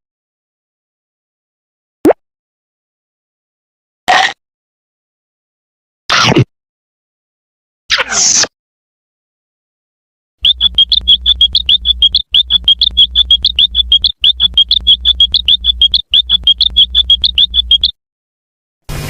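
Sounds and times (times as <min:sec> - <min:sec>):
warbling electronic trill: 0:10.4 - 0:17.9.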